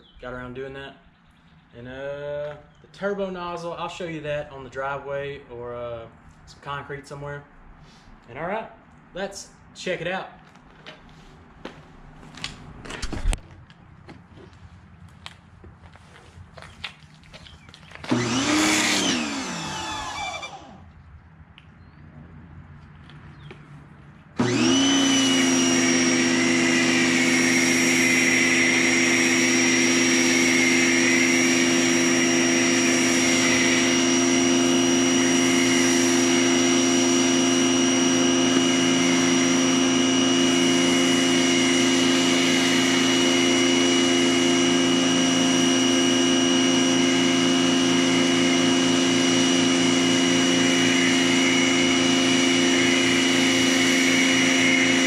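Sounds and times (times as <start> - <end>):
pressure washer motor humming: 18.0 - 20.9, 24.4 - 55.0.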